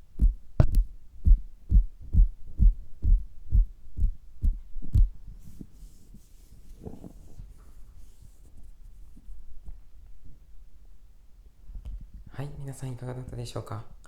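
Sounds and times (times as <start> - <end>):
dull thumps through stethoscope: 0.2 - 5.2
faint rustling: 4.5 - 10.9.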